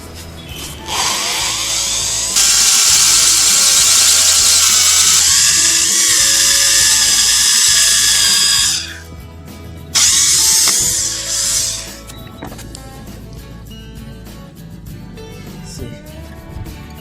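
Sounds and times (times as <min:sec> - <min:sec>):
drill boring through steel: 0:00.4 - 0:09.1, 0:10.0 - 0:12.2.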